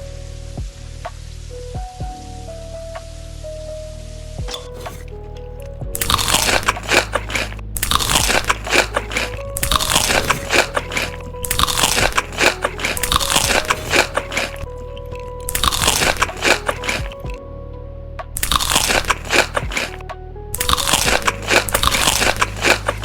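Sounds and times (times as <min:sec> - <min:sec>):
soft background music: 0:00.0 - 0:23.0
crunchy food chewing: 0:04.5 - 0:17.4, 0:18.4 - 0:20.0, 0:20.6 - 0:23.0.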